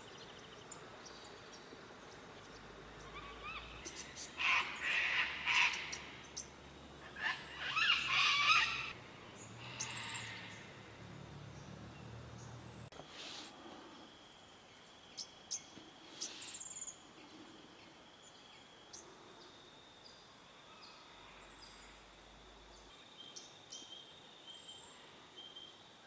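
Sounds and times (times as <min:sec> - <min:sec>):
high insect drone: 0:02.8 - 0:23.0.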